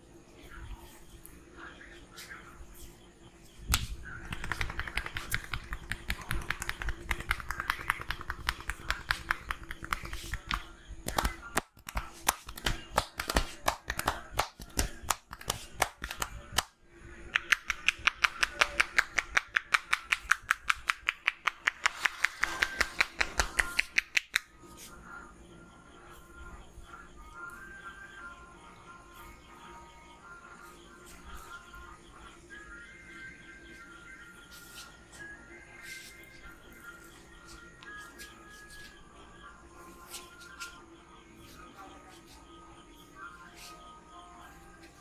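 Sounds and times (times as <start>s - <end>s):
hands slapping on head: 3.7s - 16.7s, 17.3s - 24.5s.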